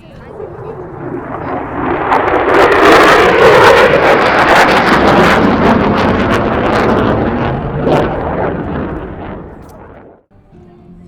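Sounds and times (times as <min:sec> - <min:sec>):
jet fly-by with crackle: 0:00.0 - 0:10.3.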